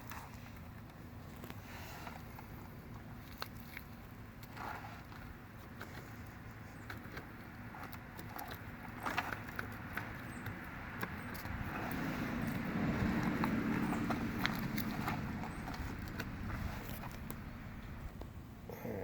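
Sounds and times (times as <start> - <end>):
low steady hum: 0.0 - 19.0
plastic squeegee scraping: 11.5 - 17.5.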